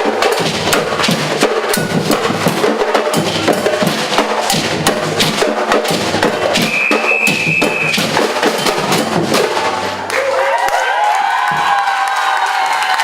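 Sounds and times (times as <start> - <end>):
percussion band drumming: 0.0 - 10.2, 11.3 - 13.0
high whistle: 6.6 - 8.1.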